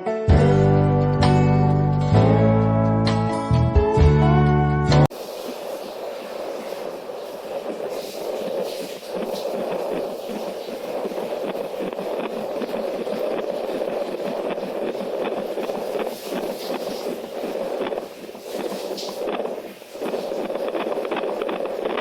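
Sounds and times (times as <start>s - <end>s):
pulsing heartbeat whoosh: 5.6s - 22.0s.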